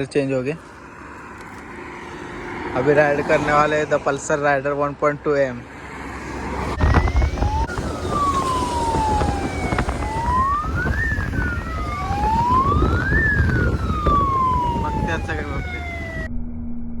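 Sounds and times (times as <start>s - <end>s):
electronic siren wailing: 0.5s - 4.1s, 6.6s - 17.0s
motorcycle running: 0.6s - 4.4s, 6.7s - 16.3s.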